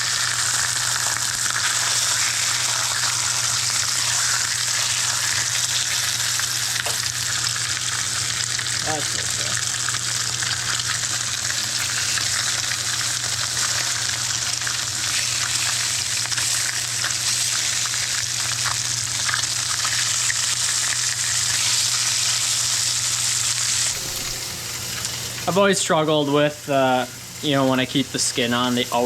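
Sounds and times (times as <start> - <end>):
fish fillets sizzling in hot oil: 0.0 - 25.4.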